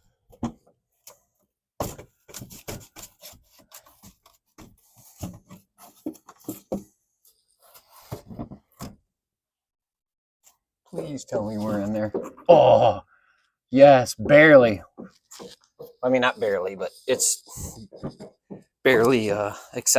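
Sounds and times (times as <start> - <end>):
objects scraping and knocking: 1.8 - 9.0, 11.0 - 12.5, 14.2 - 19.4.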